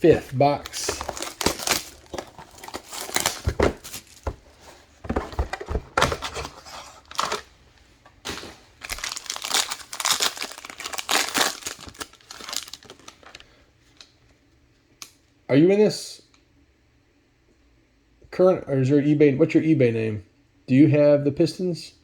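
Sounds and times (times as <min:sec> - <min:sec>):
plastic wrap crinkling: 0:00.0 - 0:14.0.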